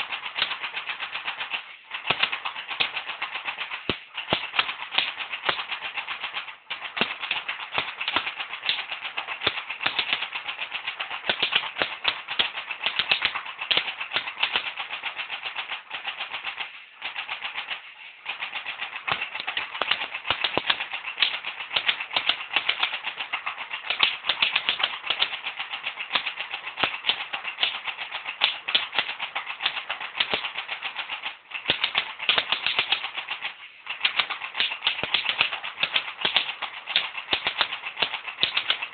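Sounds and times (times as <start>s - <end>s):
airsoft gun rapid firing: 0.0s - 15.7s, 18.3s - 30.9s, 31.6s - 33.4s, 34.0s - 38.9s.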